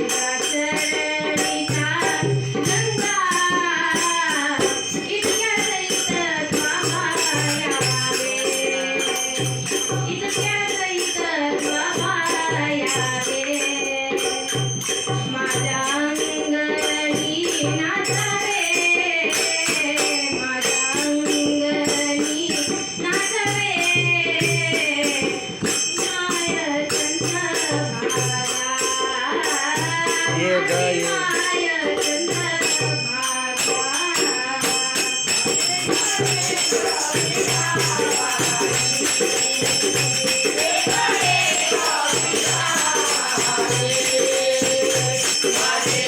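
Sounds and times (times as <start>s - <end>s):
jingling percussion: 0.0s - 46.0s
person singing devotional song: 0.0s - 46.0s
hand drum beating: 35.4s - 46.0s.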